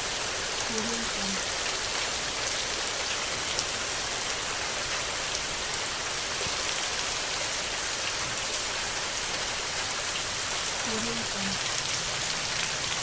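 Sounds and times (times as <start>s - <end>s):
steady rain hiss: 0.0s - 13.0s
rain drop ticks: 2.8s - 3.8s, 9.3s - 13.0s.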